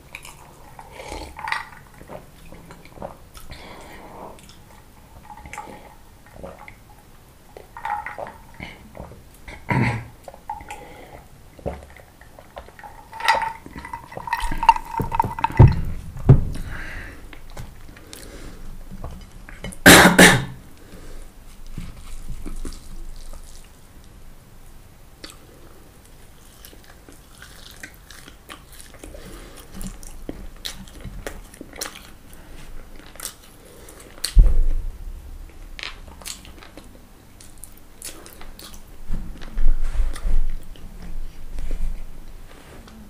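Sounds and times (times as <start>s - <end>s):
chewing crispy fried food: 21.6s - 23.8s, 25.2s - 34.4s
loud low thuds: 34.4s - 35.6s.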